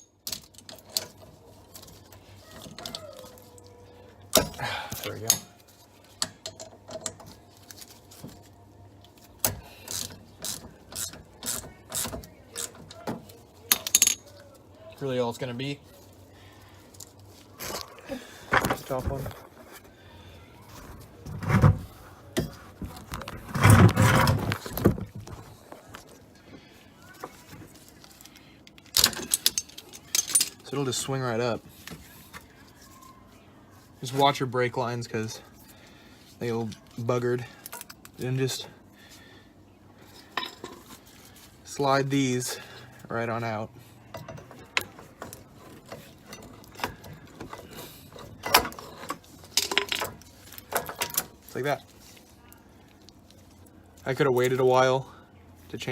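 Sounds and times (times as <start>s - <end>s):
metal tools scraping and knocking: 4.3s - 7.5s, 9.4s - 14.4s, 29.0s - 30.9s, 40.1s - 41.0s, 44.0s - 51.4s.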